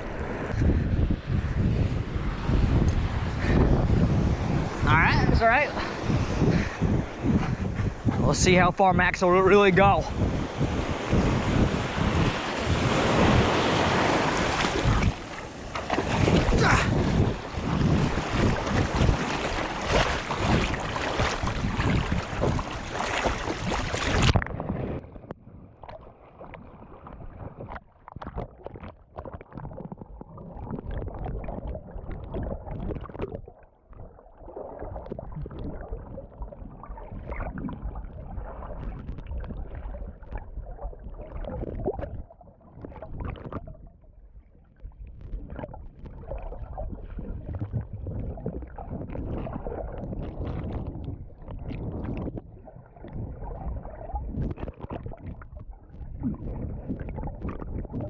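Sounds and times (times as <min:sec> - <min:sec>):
surf: 0:00.0 - 0:25.1
wind buffeting microphone: 0:00.0 - 0:26.0, 0:34.8 - 0:58.0
water sloshing underwater: 0:00.0 - 0:58.0.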